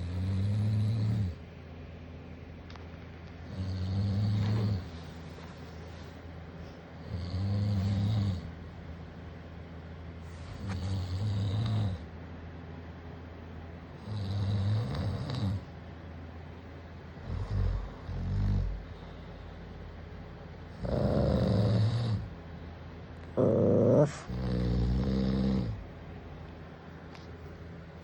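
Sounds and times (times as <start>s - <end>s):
man snoring: 0.0s - 1.4s, 3.4s - 5.0s, 7.0s - 8.5s, 10.4s - 12.1s, 14.0s - 15.7s, 17.2s - 19.0s, 20.7s - 22.4s, 23.3s - 25.8s
dog growling: 3.4s - 5.2s, 7.0s - 8.6s, 17.1s - 19.1s, 20.7s - 22.4s, 23.2s - 26.0s.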